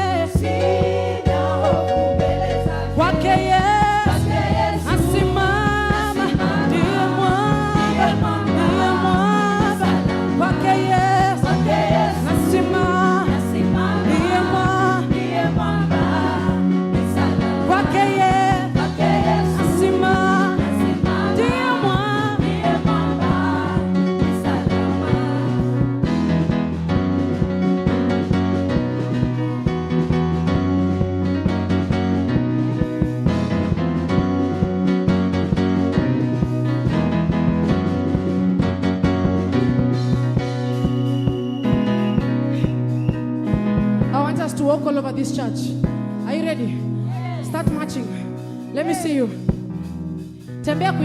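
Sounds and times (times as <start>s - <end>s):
voices singing: 0.0s - 25.9s
band with bass and drums: 0.0s - 44.7s, 45.4s - 51.0s.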